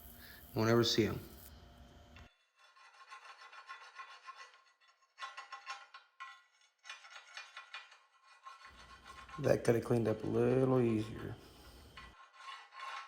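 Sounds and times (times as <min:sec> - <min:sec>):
welding arc crackling sizzle: 0:00.0 - 0:02.3.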